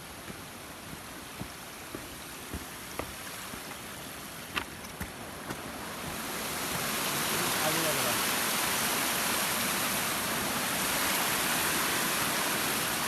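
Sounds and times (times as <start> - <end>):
rushing mountain stream: 0.0 - 13.0
footsteps on loose stones: 0.2 - 6.8.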